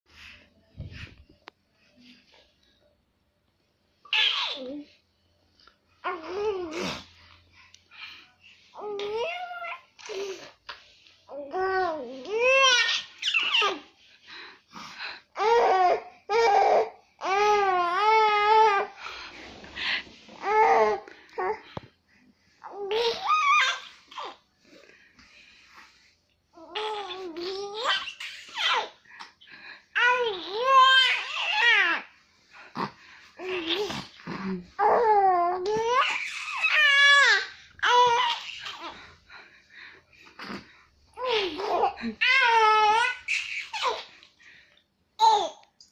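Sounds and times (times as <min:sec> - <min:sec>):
baby squealing and crying: 0:12.5 - 0:13.8, 0:34.8 - 0:38.9, 0:41.2 - 0:44.1.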